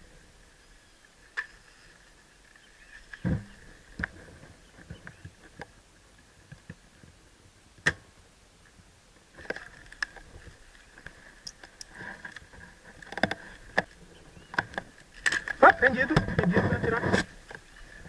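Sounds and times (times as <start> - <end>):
clicks and rustling: 9.4 - 17.7.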